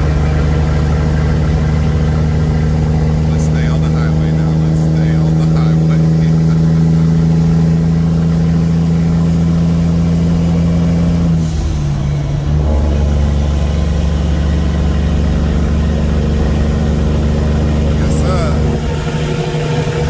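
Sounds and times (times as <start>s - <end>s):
diesel truck engine idling: 0.0s - 20.0s.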